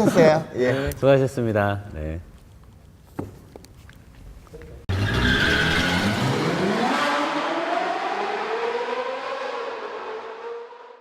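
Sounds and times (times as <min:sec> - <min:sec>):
car engine accelerating: 0:04.9 - 0:11.0.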